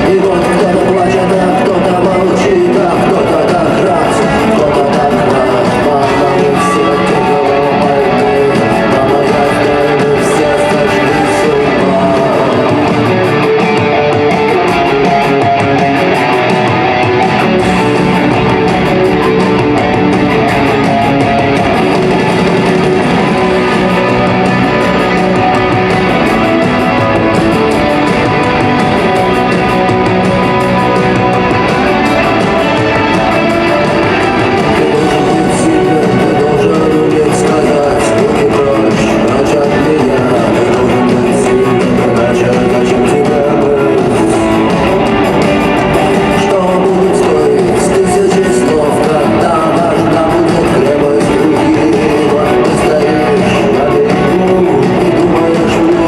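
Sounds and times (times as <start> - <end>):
electric guitars: 0.0 - 56.0
live rock band playing: 0.0 - 56.0.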